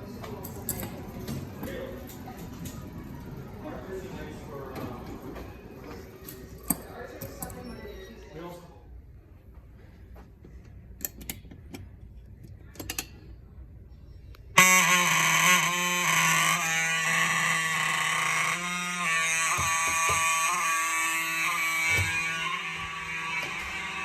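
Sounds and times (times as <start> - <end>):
fire alarm horns blaring: 14.6 - 24.0.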